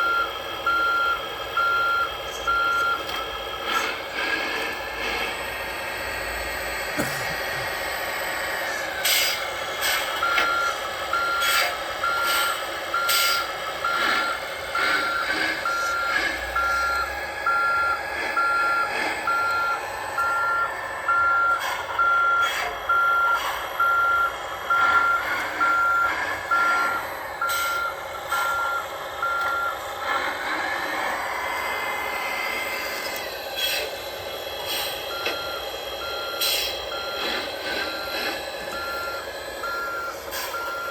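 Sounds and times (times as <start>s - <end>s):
reversing beeper: 0.0s - 3.9s, 10.1s - 30.2s, 34.7s - 40.9s.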